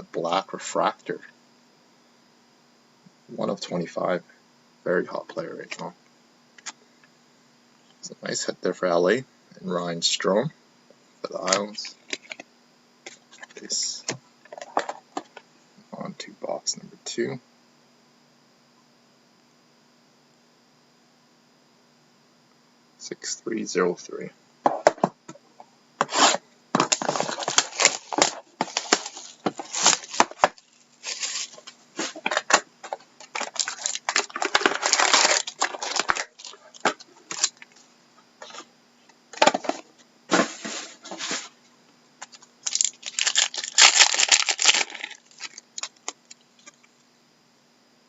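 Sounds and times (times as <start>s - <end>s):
packaging being torn and crinkled: 26.1s - 37.6s, 42.2s - 46.8s.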